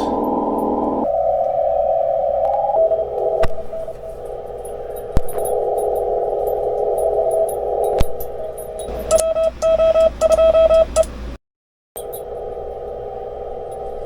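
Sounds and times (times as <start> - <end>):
morse code tone: 8.8 - 11.1
click: 9.1 - 10.4.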